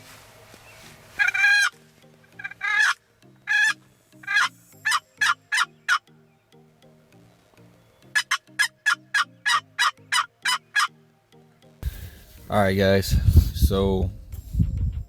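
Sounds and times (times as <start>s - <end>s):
background music with steady beat: 0.0s - 15.0s
turkey gobbling: 2.4s - 6.0s, 8.1s - 10.9s.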